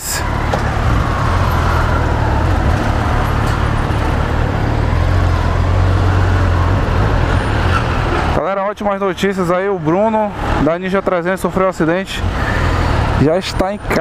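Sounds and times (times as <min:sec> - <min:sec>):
motorcycle engine rumble: 0:00.0 - 0:08.4
wind and road noise: 0:00.0 - 0:14.0.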